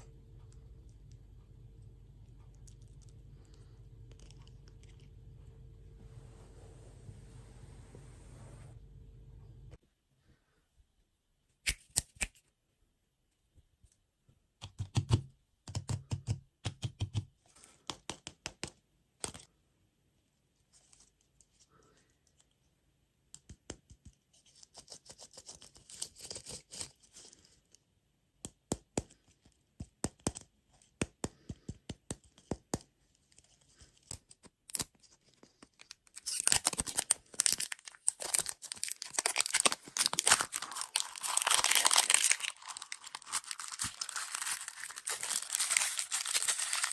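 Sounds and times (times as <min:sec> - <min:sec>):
packaging crinkling and tearing: 0:34.7 - 0:46.9.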